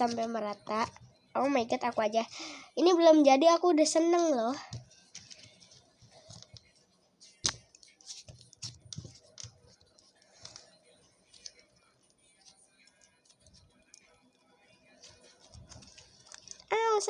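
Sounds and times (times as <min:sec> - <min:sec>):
clay slime squishing: 0:04.4 - 0:14.2.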